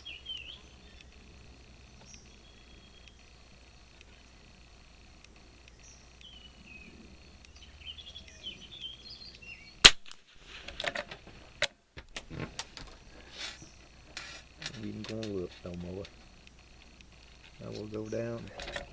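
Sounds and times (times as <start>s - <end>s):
birds chirping faintly: 0.0s - 18.9s
rifle shot: 9.8s - 10.4s
metallic clicks of rifle handling: 18.4s - 18.9s.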